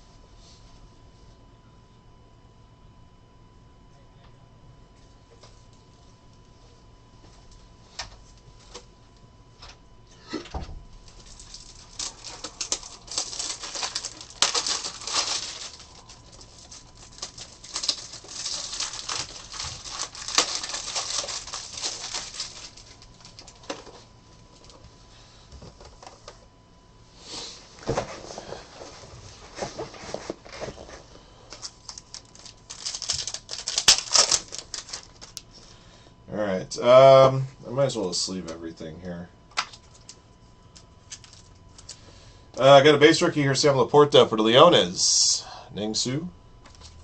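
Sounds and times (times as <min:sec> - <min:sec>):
plastic rustling and crinkling: 0:11.0 - 0:25.0, 0:27.8 - 0:35.6, 0:39.6 - 0:42.0.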